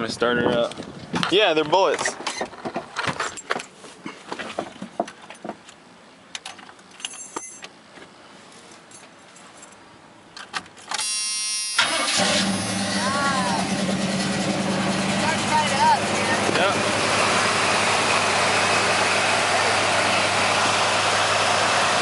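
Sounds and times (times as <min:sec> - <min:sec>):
starter motor whirring: 0:11.8 - 0:14.0
car engine idling: 0:11.8 - 0:22.0.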